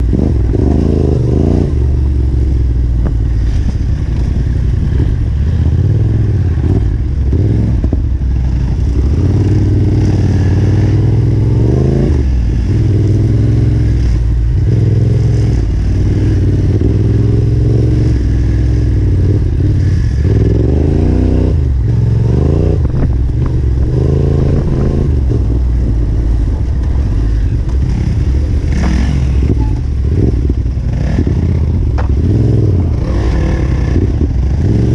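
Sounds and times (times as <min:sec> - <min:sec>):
motorcycle engine revving: 0:00.0 - 0:34.9.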